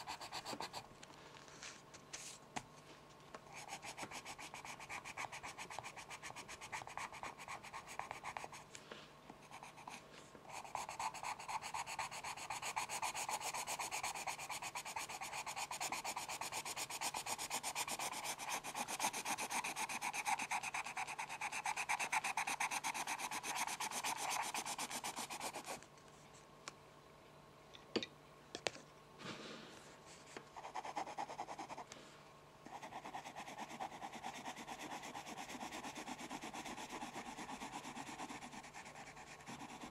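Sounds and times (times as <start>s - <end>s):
pencil scratching: 0.0s - 0.8s, 3.5s - 8.7s, 9.4s - 25.8s, 30.2s - 31.8s, 32.7s - 39.9s.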